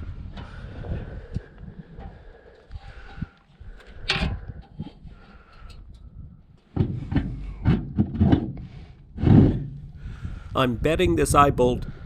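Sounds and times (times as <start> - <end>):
knocks and thumps: 6.7 - 9.9.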